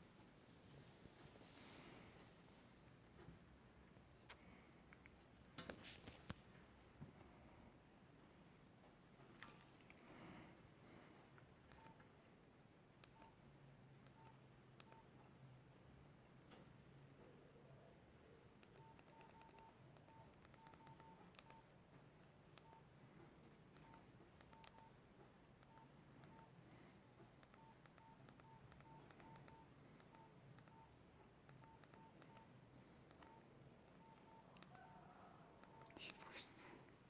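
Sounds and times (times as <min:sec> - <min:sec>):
faint keypad beeps: 0:11.7 - 0:12.1, 0:13.0 - 0:15.3, 0:18.6 - 0:21.8, 0:22.5 - 0:23.0, 0:23.7 - 0:25.0, 0:25.6 - 0:26.6, 0:27.4 - 0:36.8
key clicks: 0:18.6 - 0:22.8, 0:23.7 - 0:24.9, 0:27.3 - 0:34.8.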